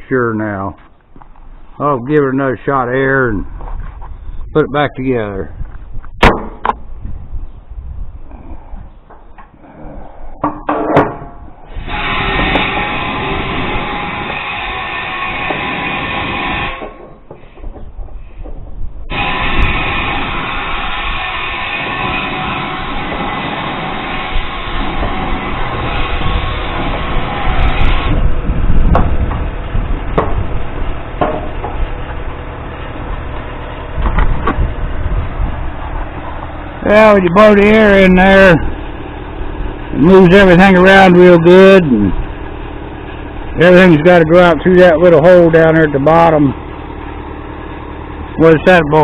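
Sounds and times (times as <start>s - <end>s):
low rumble: 0.7s - 48.9s
sharp knocks and clunks: 6.2s - 6.8s, 10.4s - 11.5s, 28.9s - 29.4s, 30.1s - 30.5s, 31.2s - 31.8s
metal clanks: 10.4s - 11.6s, 31.2s - 32.2s
compressed air blast: 11.6s - 17.6s, 19.1s - 28.2s.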